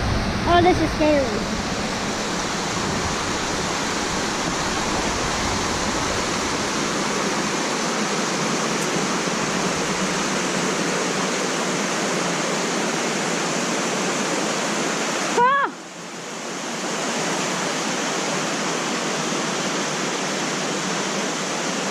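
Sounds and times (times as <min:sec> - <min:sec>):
mountain creek rushing: 0:00.0 - 0:21.9.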